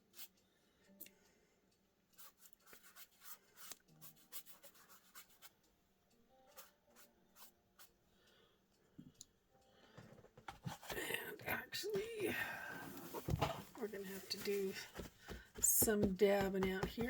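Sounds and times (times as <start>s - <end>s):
paintbrush scratching on paper: 2.2s - 5.6s, 6.5s - 7.9s, 10.5s - 17.0s.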